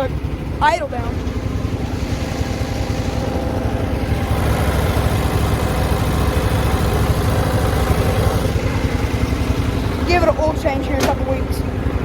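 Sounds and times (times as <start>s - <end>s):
lawnmower engine idling: 0.0s - 12.0s.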